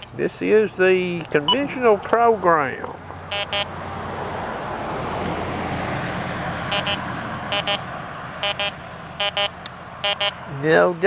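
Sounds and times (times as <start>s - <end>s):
metal detector double beeps: 3.3s - 3.7s, 6.7s - 7.8s, 8.4s - 10.4s.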